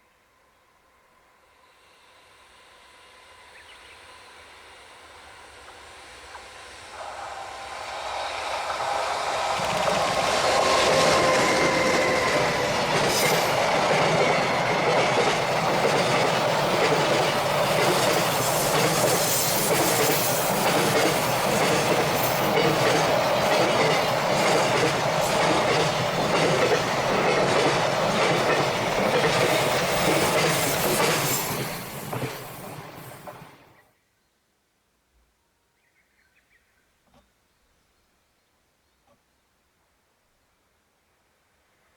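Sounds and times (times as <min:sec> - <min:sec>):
electric locomotive whine: 0:00.4 - 0:33.9
freight train rumbling past: 0:01.6 - 0:33.8.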